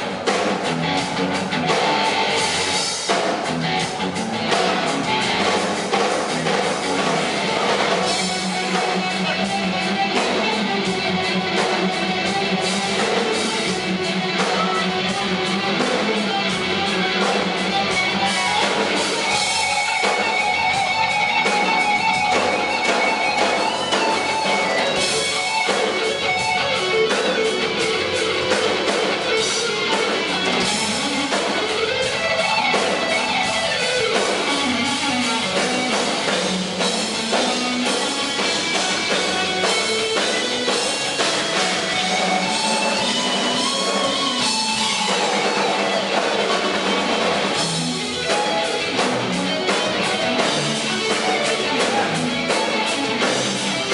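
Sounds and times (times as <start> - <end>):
electric guitar lead bending notes: 0.0 - 53.9
rock band playing live: 0.0 - 53.9.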